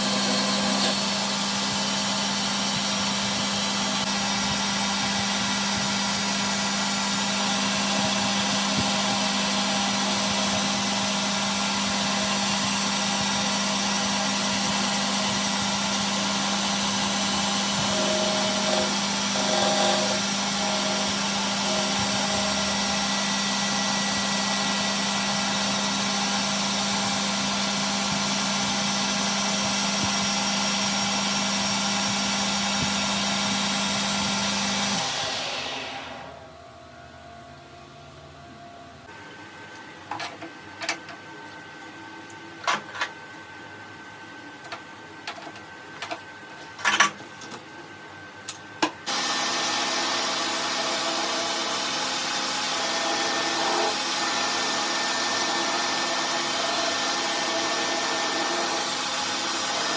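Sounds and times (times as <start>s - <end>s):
lathe running: 0.0s - 36.5s, 49.1s - 59.9s.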